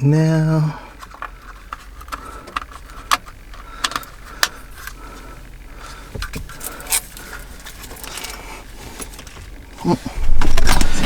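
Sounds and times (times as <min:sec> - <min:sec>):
usb cable clicking and rattling: 0:01.0 - 0:05.0.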